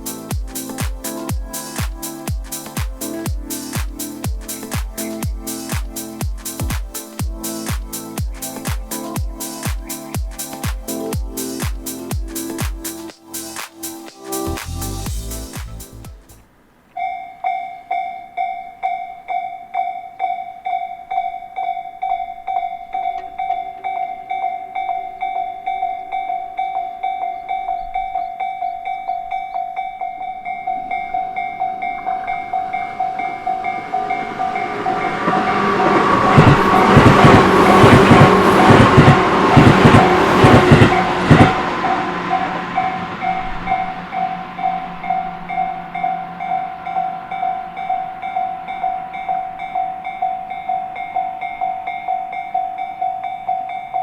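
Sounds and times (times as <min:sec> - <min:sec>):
electric train passing: 0:00.0 - 0:54.0
level crossing alarm bell ringing: 0:17.0 - 0:54.0
train wheels clacking over rail joints: 0:32.0 - 0:43.0.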